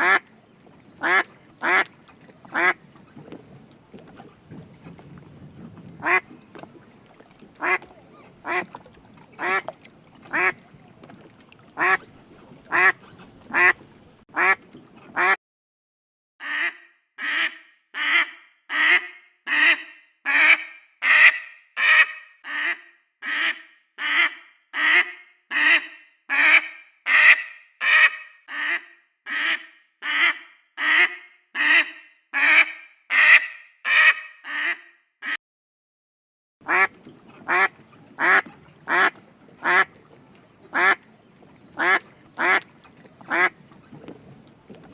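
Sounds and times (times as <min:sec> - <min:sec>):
duck quacking: 0:00.0 - 0:00.3, 0:01.0 - 0:01.9, 0:02.5 - 0:02.8, 0:06.0 - 0:06.3, 0:07.6 - 0:08.8, 0:09.4 - 0:10.6, 0:11.8 - 0:12.0, 0:12.7 - 0:13.8, 0:14.4 - 0:15.4, 0:16.4 - 0:35.4, 0:36.7 - 0:39.9, 0:40.7 - 0:41.0, 0:41.8 - 0:43.6.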